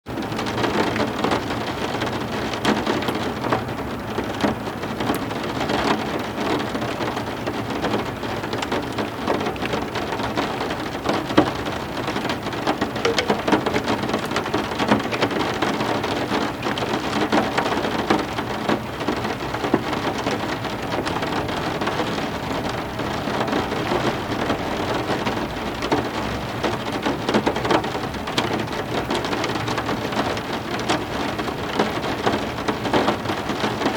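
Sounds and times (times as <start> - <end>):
heavy rain: 0.1 - 33.9
raindrops striking surface: 4.2 - 22.0.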